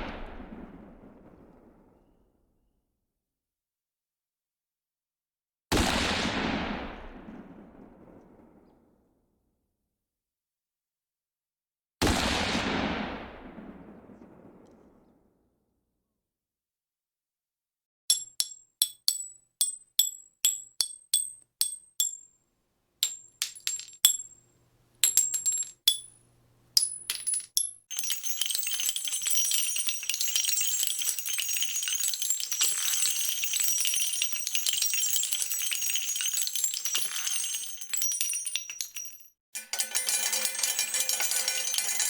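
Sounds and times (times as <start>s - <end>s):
metal pieces clinking: 18.1s - 22.3s, 23.0s - 42.0s
metal pieces pouring and jingling: 23.0s - 26.1s, 26.8s - 42.0s.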